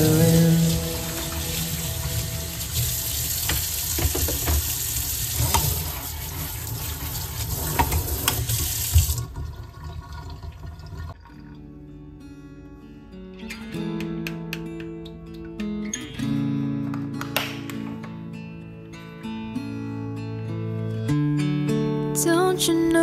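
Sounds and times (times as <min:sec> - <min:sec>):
tap water running into sink: 0:00.1 - 0:11.4
clatter in sink: 0:03.4 - 0:04.8.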